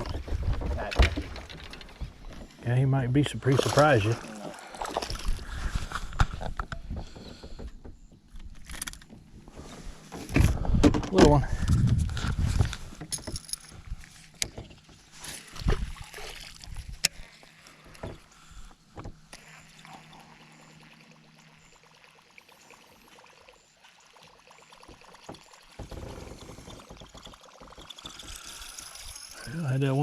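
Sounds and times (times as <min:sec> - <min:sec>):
light water sounds: 0:03.2 - 0:06.7, 0:12.5 - 0:30.0
sharp knocks on a boat: 0:18.9 - 0:19.2.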